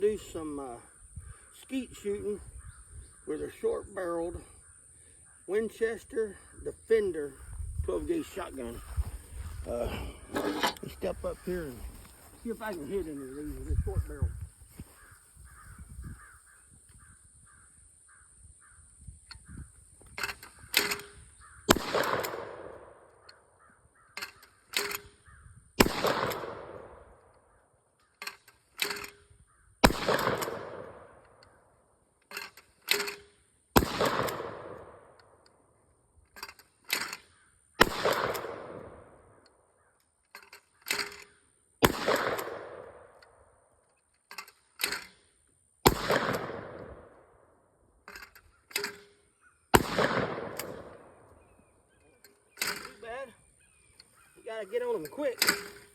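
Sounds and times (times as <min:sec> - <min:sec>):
crows calling: 0:00.0 - 0:44.8, 0:46.0 - 0:55.9
shotgun shots echoing: 0:09.7 - 0:11.8, 0:20.7 - 0:23.5, 0:24.7 - 0:27.5, 0:29.8 - 0:31.6, 0:32.9 - 0:35.6, 0:37.8 - 0:39.5, 0:40.9 - 0:43.6, 0:45.8 - 0:47.6, 0:48.8 - 0:51.7
shotgun action clacks: 0:20.2 - 0:22.8, 0:29.9 - 0:31.4, 0:32.3 - 0:35.4, 0:49.8 - 0:51.2.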